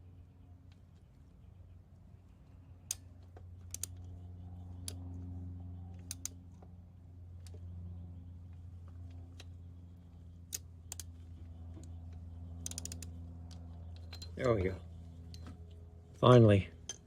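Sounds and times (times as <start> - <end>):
low hum: 0.0 - 17.0
ratchet wrench clicking: 3.7 - 4.0, 10.5 - 11.1, 12.6 - 13.1.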